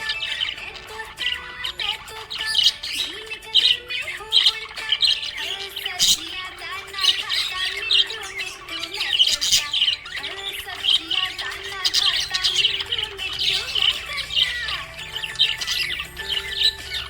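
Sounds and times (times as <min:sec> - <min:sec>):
budgerigars chirping and squawking: 0:00.0 - 0:17.0.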